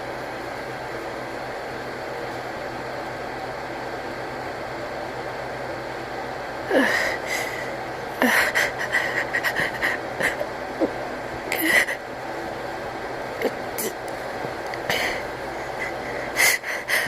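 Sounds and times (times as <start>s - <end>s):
steady background hiss: 0.0s - 17.0s
person gasping inhale: 6.7s - 10.5s, 14.9s - 17.0s.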